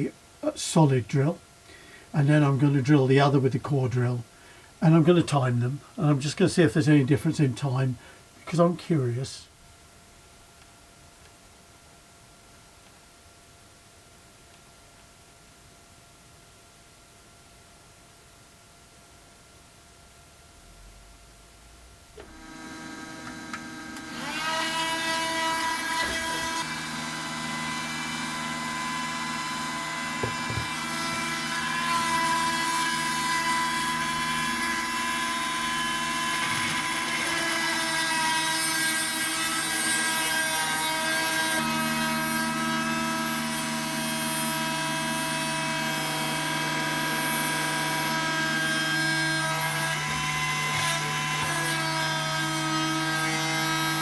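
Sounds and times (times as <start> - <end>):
drill bit grinding into stone: 22.2 - 54.0
rotary tool whining: 22.2 - 54.0.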